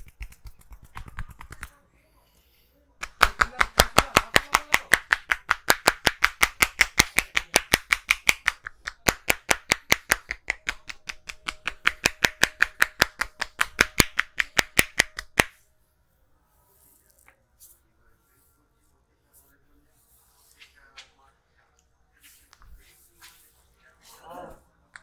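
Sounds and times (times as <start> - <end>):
hands striking in percussive massage: 0.0 - 1.7, 3.0 - 15.7.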